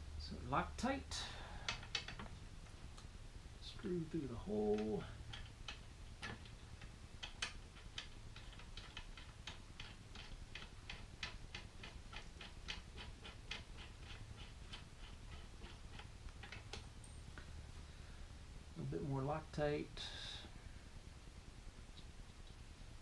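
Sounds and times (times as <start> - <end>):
ratcheting tool clicking: 4.7 - 16.8.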